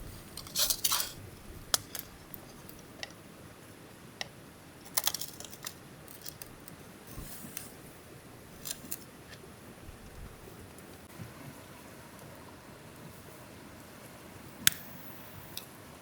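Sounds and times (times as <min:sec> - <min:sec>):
crinkling: 0:00.0 - 0:03.2, 0:04.8 - 0:07.8, 0:08.5 - 0:09.4
sharp crisp clicks and snips: 0:14.6 - 0:14.9.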